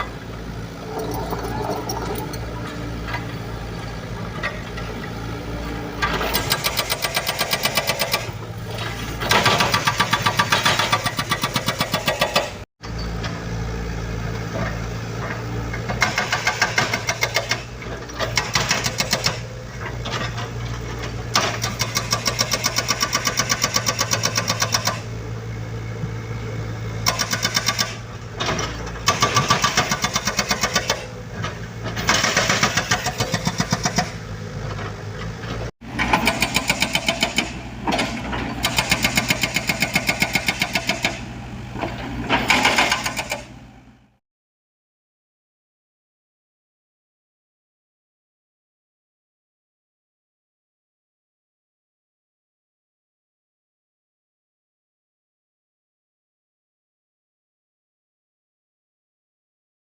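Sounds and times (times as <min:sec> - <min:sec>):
excavator diesel engine: 0:00.0 - 0:44.2.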